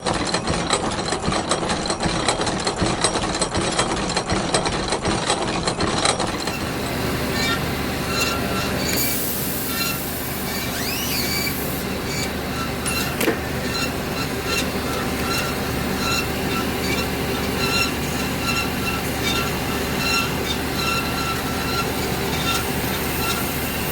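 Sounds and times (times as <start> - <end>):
metal bandsaw running: 0.1 - 23.9
high whining squeal: 6.3 - 23.9.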